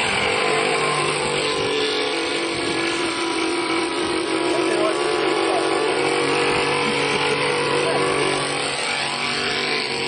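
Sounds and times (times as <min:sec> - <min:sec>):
model aircraft engine running: 0:00.0 - 0:10.0.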